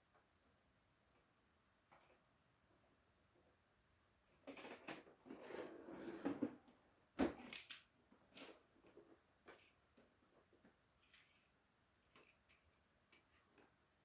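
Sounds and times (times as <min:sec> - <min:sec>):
small objects clicking and rustling: 0:11.0 - 0:13.3.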